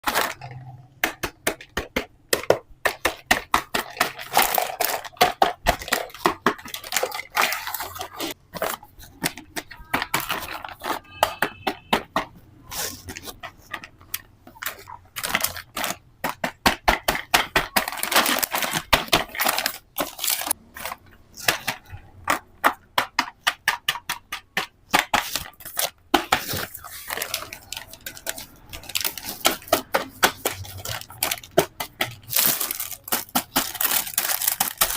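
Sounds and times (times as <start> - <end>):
plastic toy pieces clicking: 0.0 - 12.0, 13.1 - 34.9.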